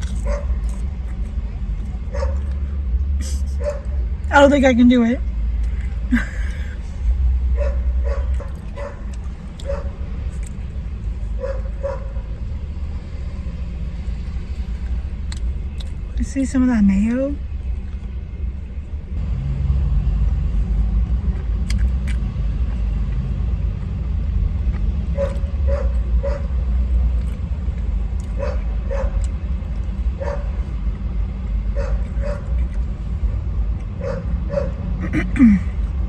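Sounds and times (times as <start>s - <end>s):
steady low rumble: 0.0s - 36.0s
distant dog barking: 0.2s - 0.7s, 2.1s - 2.6s, 7.5s - 10.0s, 11.4s - 12.3s, 25.2s - 26.7s, 28.3s - 29.3s, 30.2s - 30.6s, 31.7s - 32.6s, 34.0s - 34.9s.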